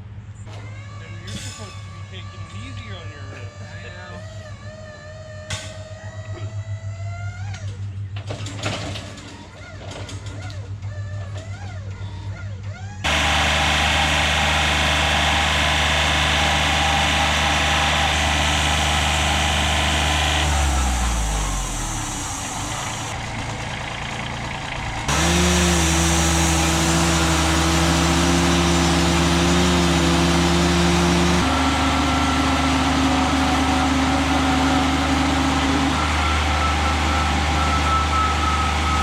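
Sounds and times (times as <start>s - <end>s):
motor engine running: 13.1s - 39.0s.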